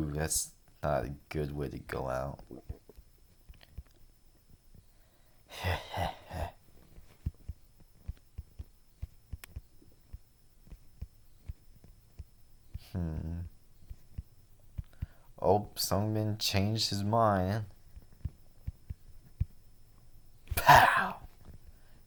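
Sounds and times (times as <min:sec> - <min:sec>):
man's short laugh: 0:05.5 - 0:06.6.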